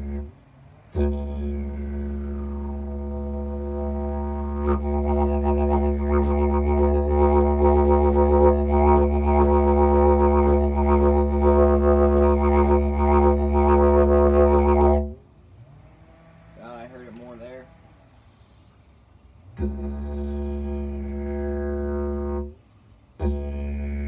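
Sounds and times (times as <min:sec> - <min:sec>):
didgeridoo drone: 0:00.0 - 0:15.2, 0:19.5 - 0:22.6, 0:23.2 - 0:24.0.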